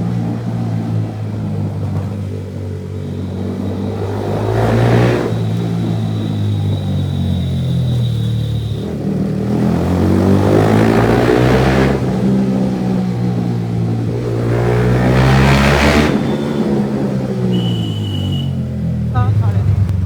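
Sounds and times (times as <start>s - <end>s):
motorcycle engine revving: 0.0s - 20.0s.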